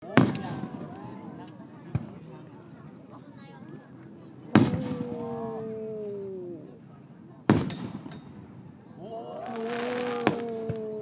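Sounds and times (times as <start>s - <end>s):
firework burst echo: 4.5s - 5.4s, 9.4s - 11.0s
spectators oohing: 4.5s - 7.4s, 8.9s - 11.0s
crackling hiss: 7.5s - 11.0s.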